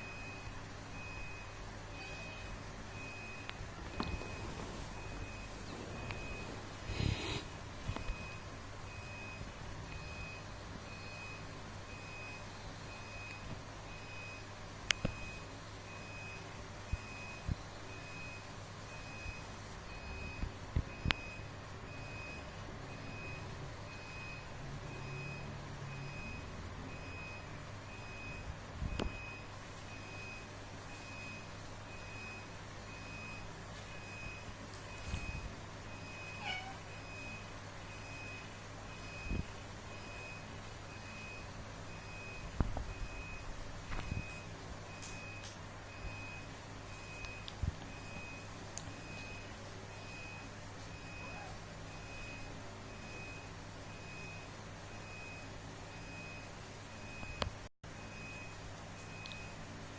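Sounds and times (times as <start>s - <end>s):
cats scuffling: 3.8s - 8.4s
cat meowing: 36.3s - 36.9s.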